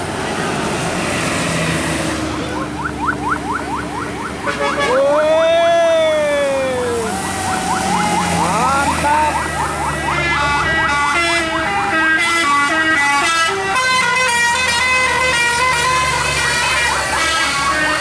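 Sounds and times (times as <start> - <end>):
musical air horn playing a tune: 10.1 - 18.0.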